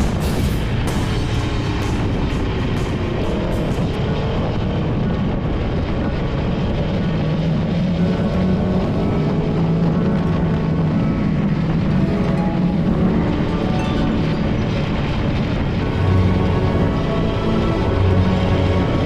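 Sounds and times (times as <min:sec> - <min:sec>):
background music: 0:00.0 - 0:04.5, 0:07.7 - 0:19.0
motorcycle engine at speed: 0:00.0 - 0:13.5
wind rush: 0:00.0 - 0:19.0.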